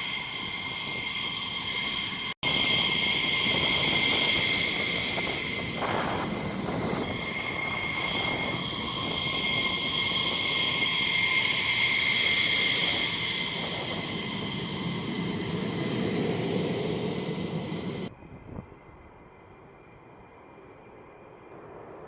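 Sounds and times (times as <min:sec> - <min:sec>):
jet engines high whine: 0:00.0 - 0:22.0.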